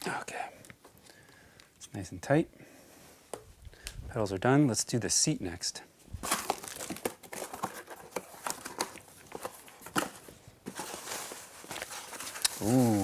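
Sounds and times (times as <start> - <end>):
packaging rustling and crinkling: 6.2 - 13.0.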